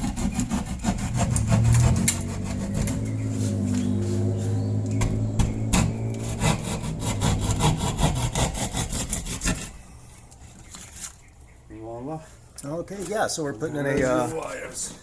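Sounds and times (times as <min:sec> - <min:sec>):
hand saw sawing: 0:00.0 - 0:09.8
steady low hum: 0:00.8 - 0:10.4.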